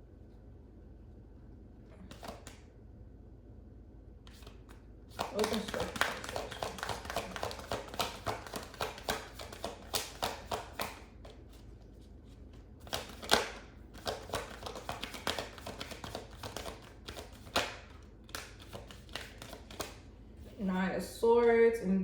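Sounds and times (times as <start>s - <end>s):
cards shuffling: 2.0s - 2.6s, 4.3s - 20.6s
cards tapping and slapping: 2.0s - 2.6s, 4.3s - 11.7s, 12.5s - 20.0s.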